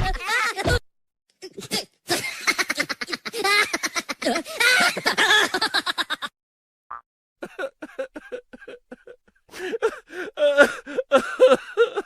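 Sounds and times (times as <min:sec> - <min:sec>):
giggling and snickering: 0:01.4 - 0:06.2.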